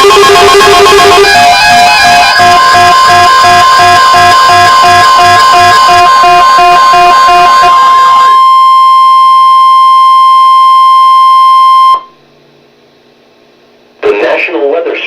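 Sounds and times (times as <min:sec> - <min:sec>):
steady alert tone: 0:00.0 - 0:08.9.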